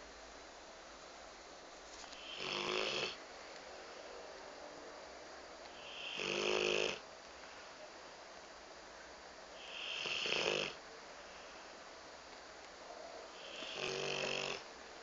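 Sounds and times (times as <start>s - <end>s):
dog snoring: 2.2s - 3.2s, 5.7s - 7.0s, 9.6s - 10.8s, 13.3s - 14.7s.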